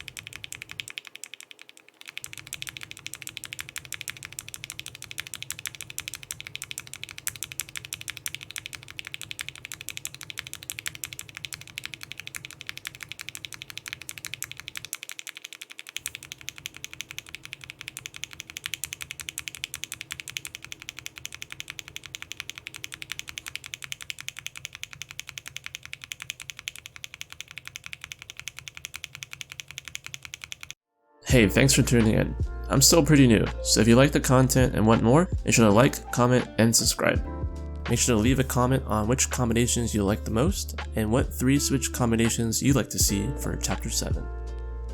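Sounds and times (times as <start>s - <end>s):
typing on mechanical keyboard: 0.0s - 30.8s.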